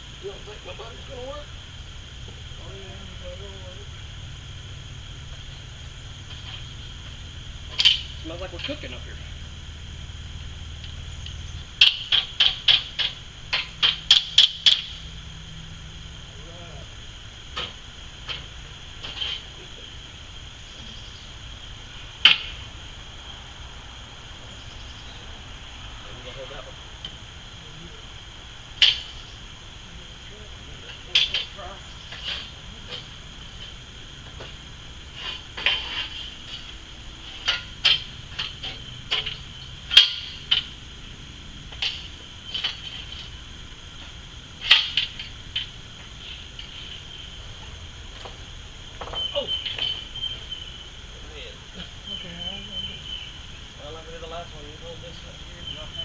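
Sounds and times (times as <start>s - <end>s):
high insect drone: 0.0s - 56.0s
hand tools clinking on metal: 7.7s - 9.3s, 10.8s - 15.1s, 17.5s - 20.0s, 28.8s - 29.5s, 30.1s - 50.6s.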